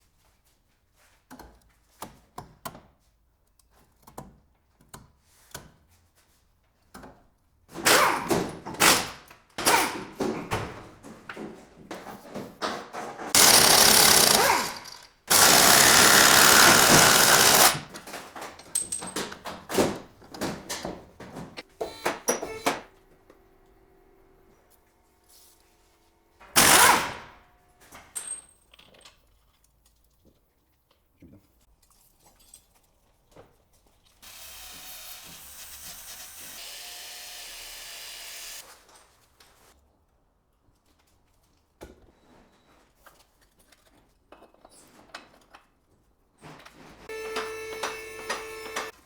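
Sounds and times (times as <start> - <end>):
impact wrench hammering: 7.8 - 10.1, 13.4 - 18.0, 26.4 - 27.4
loud knocking and clatter: 13.2 - 21.5.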